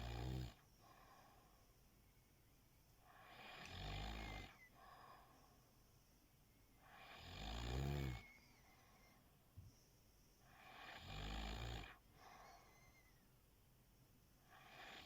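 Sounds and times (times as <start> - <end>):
quiet breathing: 0.0 - 15.0
person snoring: 3.2 - 4.5.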